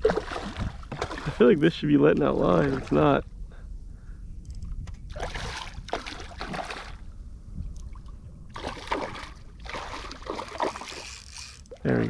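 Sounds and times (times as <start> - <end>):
water splashing beside kayak: 0.0 - 3.2, 5.1 - 7.0, 7.8 - 12.0
wind rumble on microphone: 0.0 - 10.5.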